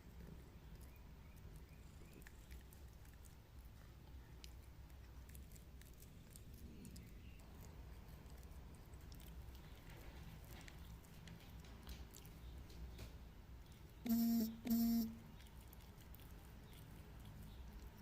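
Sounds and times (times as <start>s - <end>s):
cat chewing clicks: 0.1s - 14.0s.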